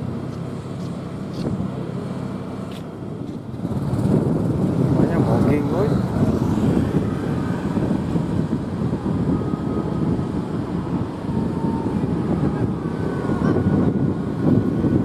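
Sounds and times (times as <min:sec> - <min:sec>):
machinery whining: 0:00.0 - 0:15.0
wind buffeting microphone: 0:03.0 - 0:15.0.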